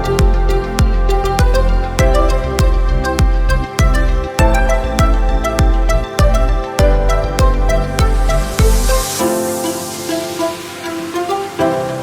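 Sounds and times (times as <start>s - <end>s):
electronic music with kick drum: 0.0s - 12.0s.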